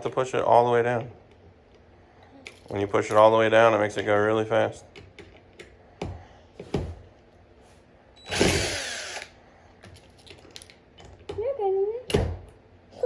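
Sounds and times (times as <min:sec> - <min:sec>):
drill driving a screw: 0:08.3 - 0:09.4.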